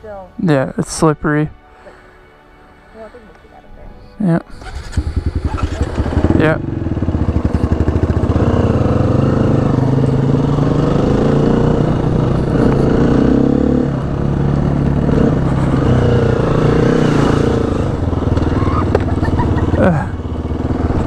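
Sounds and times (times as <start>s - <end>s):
dirt bike engine running: 4.6s - 21.0s.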